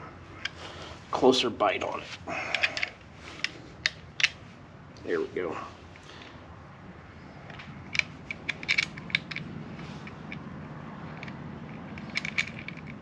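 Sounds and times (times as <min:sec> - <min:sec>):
low steady hum: 0:00.0 - 0:13.0
rivet gun metal clicks and scrapes: 0:01.8 - 0:04.4, 0:07.4 - 0:10.5, 0:11.1 - 0:13.0.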